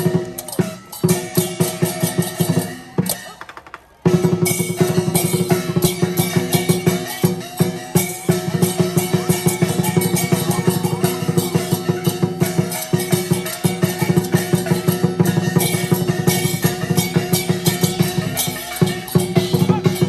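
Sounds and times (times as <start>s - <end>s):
fast dense drumming: 0.0s - 20.0s
crashing cymbal hits: 4.2s - 20.0s.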